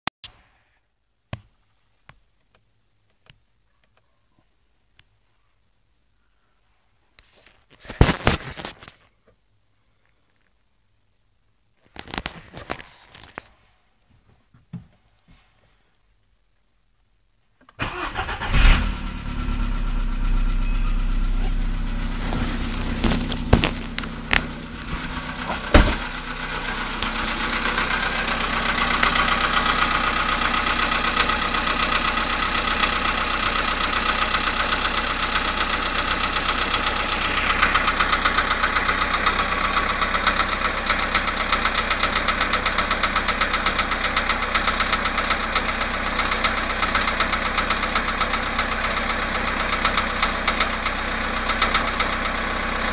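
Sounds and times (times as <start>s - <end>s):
petrol engine idling: 17.8s - 52.9s.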